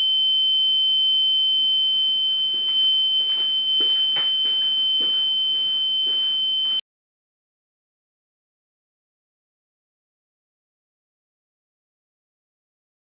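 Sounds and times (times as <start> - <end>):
high-pitched alarm buzzer: 0.0 - 6.8.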